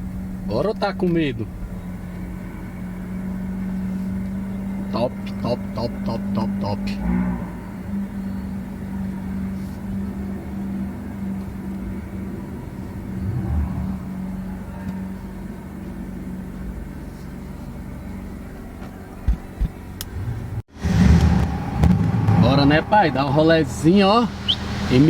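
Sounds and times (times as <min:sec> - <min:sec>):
car engine running: 0:00.0 - 0:25.0
short thumps: 0:18.8 - 0:20.4.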